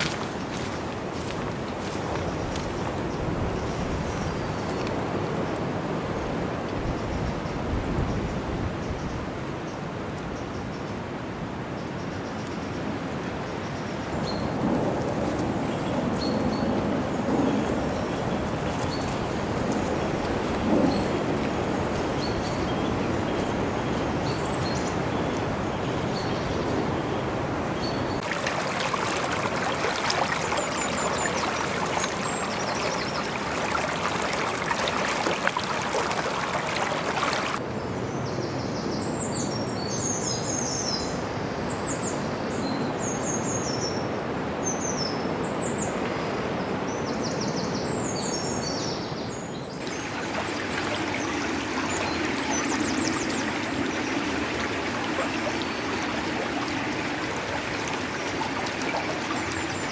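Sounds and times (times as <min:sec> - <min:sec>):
birds chirping: 0:14.2 - 0:37.6, 0:49.8 - 0:59.9.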